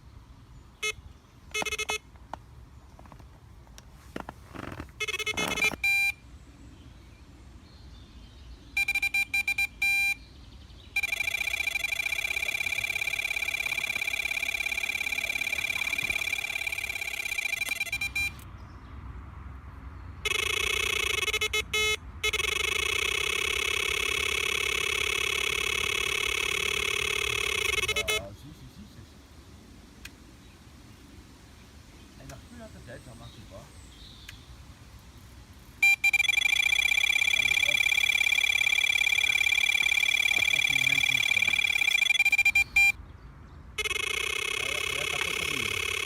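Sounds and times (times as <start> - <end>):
high-pitched alarm beeps: 0.8 - 2.0, 5.0 - 6.2, 8.8 - 10.2, 10.9 - 18.4, 20.2 - 28.3, 35.8 - 43.0, 43.8 - 46.0
lower alarm tone: 0.8 - 2.0, 5.0 - 6.2, 8.8 - 10.2, 11.0 - 18.4, 20.2 - 28.3, 35.8 - 43.0, 43.8 - 46.0
continuous high alarm tone: 0.8 - 2.1, 5.0 - 6.2, 8.8 - 10.2, 10.9 - 18.4, 20.2 - 28.3, 35.8 - 43.0, 43.8 - 46.0.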